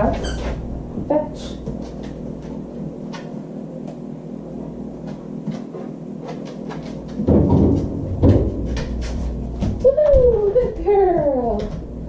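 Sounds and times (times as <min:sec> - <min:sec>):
refrigerator door knocking and rattling: 0:07.2 - 0:08.8.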